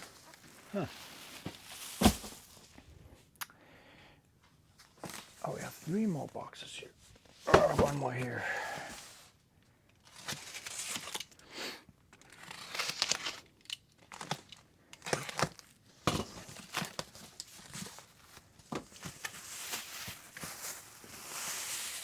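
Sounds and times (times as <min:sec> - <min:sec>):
packing material crinkling and tearing: 0:00.0 - 0:02.8, 0:10.0 - 0:11.4, 0:12.2 - 0:15.8, 0:16.5 - 0:22.0.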